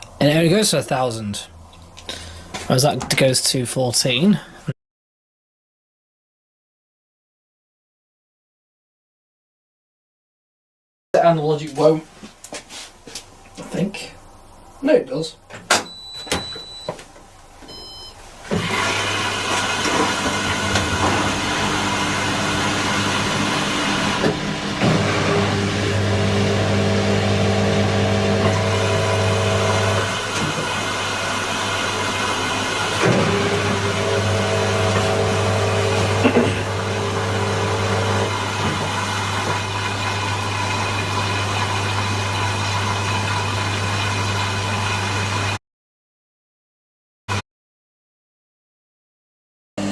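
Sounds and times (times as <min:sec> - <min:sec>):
washing machine humming: 0:13.4 - 0:45.6
water rushing in: 0:18.6 - 0:45.6.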